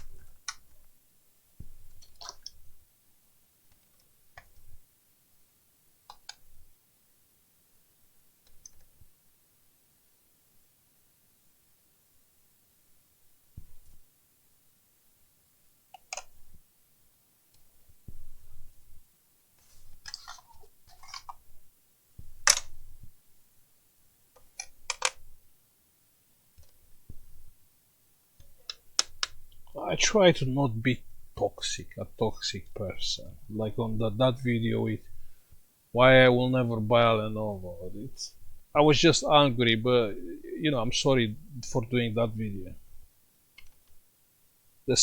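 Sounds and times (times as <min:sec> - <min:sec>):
laptop case parts clicking: 0:22.4 - 0:22.7
plastic parts clicking and knocking: 0:22.4 - 0:22.8, 0:24.4 - 0:25.2.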